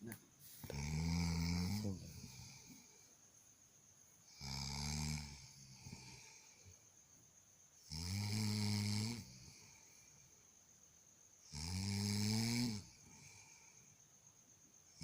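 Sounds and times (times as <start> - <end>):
quiet breathing: 0.0 - 7.9, 9.0 - 11.3, 12.8 - 14.9
low rattling snores: 0.6 - 3.1, 4.2 - 6.9, 7.8 - 10.2, 11.4 - 13.9.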